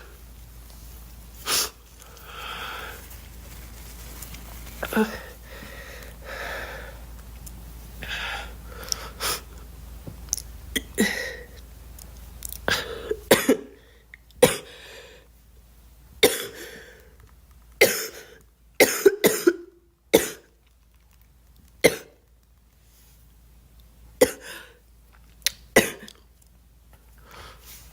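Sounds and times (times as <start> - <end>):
breathy throat sounds: 4.8 - 7.0
girl coughing: 12.7 - 13.8, 14.4 - 14.7, 16.2 - 16.6, 17.8 - 20.5, 24.2 - 24.6, 25.8 - 26.1.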